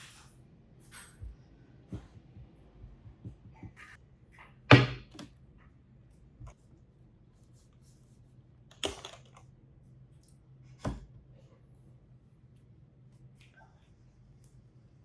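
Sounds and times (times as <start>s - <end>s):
hard objects knocking: 4.7s - 5.3s.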